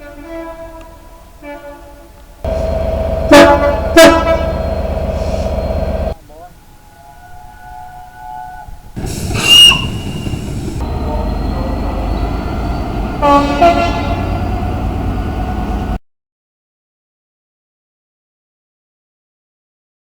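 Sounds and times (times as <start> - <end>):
train horn blasts: 0.0 - 14.8
rumble of passing train: 0.0 - 16.0.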